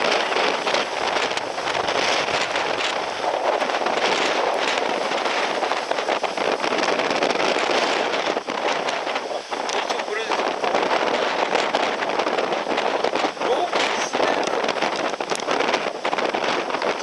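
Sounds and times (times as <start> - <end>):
storm wind gusting on microphone: 0.0 - 17.0.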